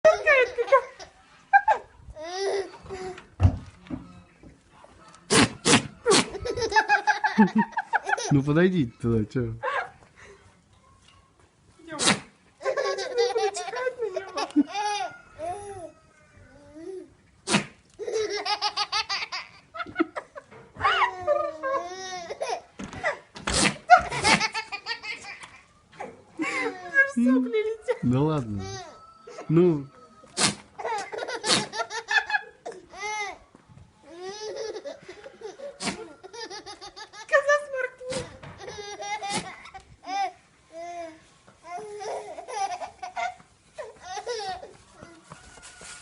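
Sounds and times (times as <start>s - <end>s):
goat sneezing: 5.3s - 6.3s, 12.0s - 12.4s, 17.4s - 17.8s, 23.5s - 23.9s, 30.4s - 30.7s, 31.4s - 31.8s
people laughing: 6.3s - 8.4s.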